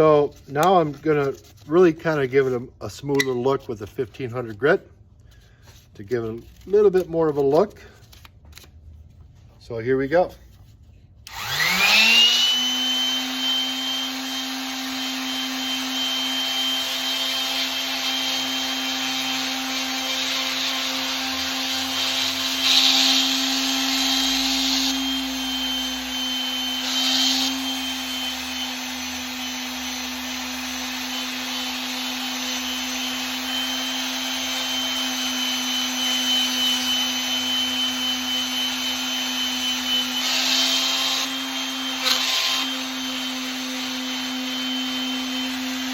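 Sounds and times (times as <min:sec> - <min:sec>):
electric sander whine: 0:11.3 - 0:45.9.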